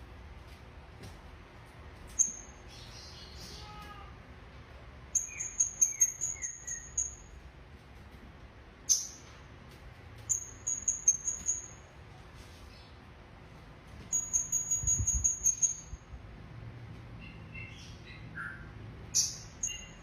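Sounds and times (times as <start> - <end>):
songbird calling: 5.2 - 7.2.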